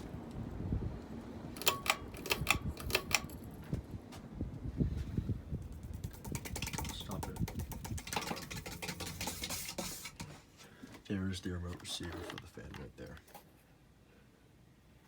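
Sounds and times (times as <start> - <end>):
sharp clicks: 1.6 - 3.4, 5.6 - 8.8.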